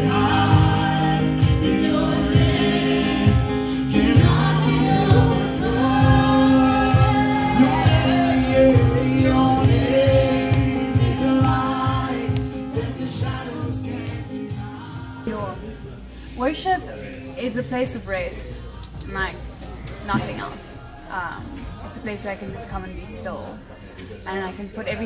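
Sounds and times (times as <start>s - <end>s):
steady music beat: 0.0s - 15.6s
group singing a worship song: 0.0s - 22.8s.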